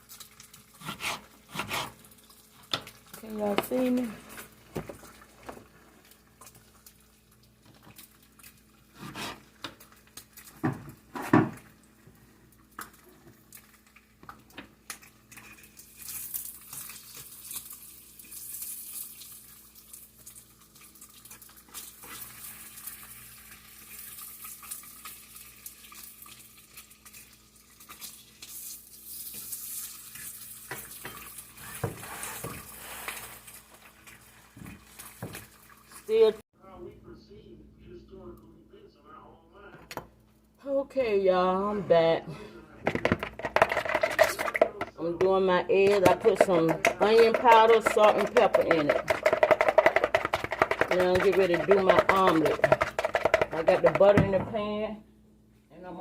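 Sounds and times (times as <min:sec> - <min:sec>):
dishes and utensils clattering: 0:42.9 - 0:54.4.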